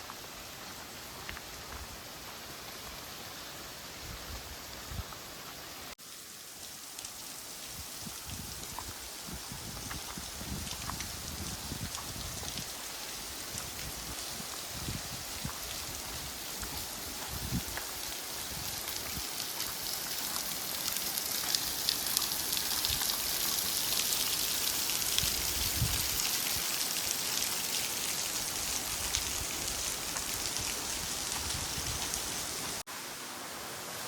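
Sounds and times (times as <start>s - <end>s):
waterfall splashing on rock: 6.9s - 32.8s.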